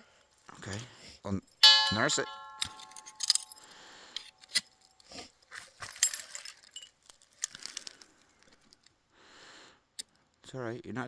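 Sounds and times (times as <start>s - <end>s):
kindling crackling and crunching: 2.8s - 9.0s.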